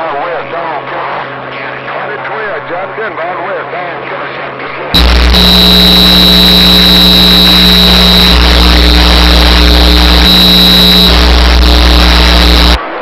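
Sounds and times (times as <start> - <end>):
low hum: 5.0 - 12.8
radio static burst: 5.0 - 12.8.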